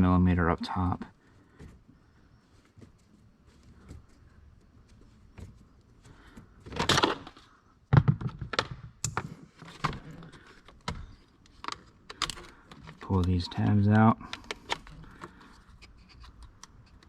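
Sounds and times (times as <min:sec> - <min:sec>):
clicks and knocks of plastic trim: 0:06.6 - 0:13.3.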